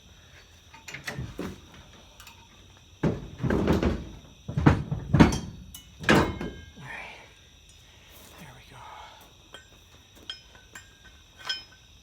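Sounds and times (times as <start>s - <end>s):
metal hitch knocking and scraping: 0.7s - 6.8s.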